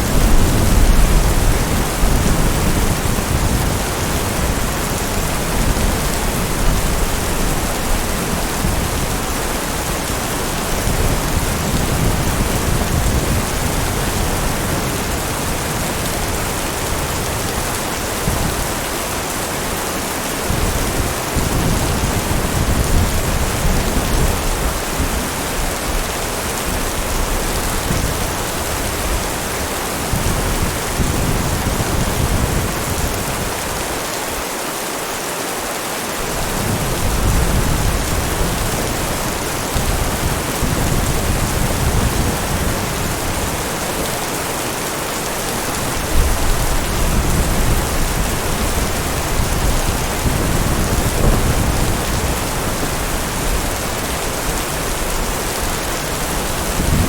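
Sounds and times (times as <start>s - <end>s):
thunder rumbling: 0.0s - 19.8s, 36.2s - 57.0s
heavy rain falling: 0.0s - 57.0s.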